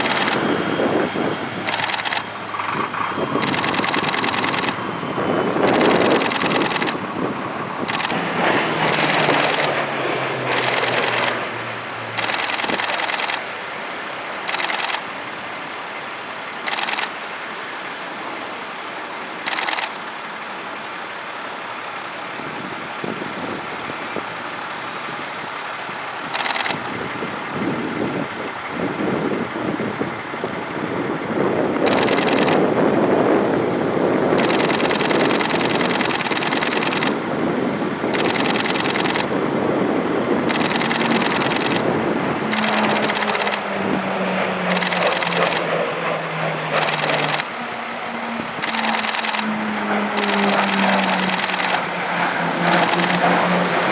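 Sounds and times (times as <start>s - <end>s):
rapid camera shutter clicks: 0.0s - 0.4s, 1.6s - 2.3s, 3.4s - 4.8s, 5.6s - 7.0s, 7.8s - 8.2s, 8.9s - 9.8s, 10.5s - 11.4s, 12.2s - 13.5s, 14.4s - 15.1s, 16.6s - 17.2s, 19.4s - 20.0s, 26.3s - 26.9s, 31.9s - 32.6s, 34.4s - 37.2s, 38.1s - 39.4s, 40.4s - 41.9s, 42.5s - 43.6s, 44.7s - 45.7s, 46.7s - 47.6s, 48.5s - 49.5s, 50.2s - 51.8s, 52.6s - 53.3s
twin turboprop engines droning: 0.0s - 53.9s.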